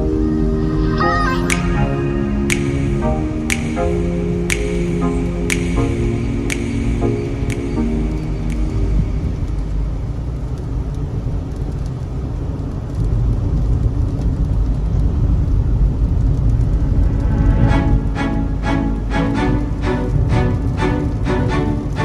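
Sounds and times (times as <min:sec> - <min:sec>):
car driving in heavy rain: 0:09.0 - 0:17.2.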